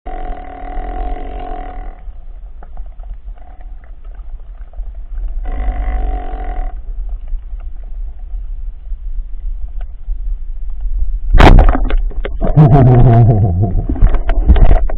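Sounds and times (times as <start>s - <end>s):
drawn-out droning tones: 0.1s - 8.5s
low underwater rumble: 0.1s - 14.9s.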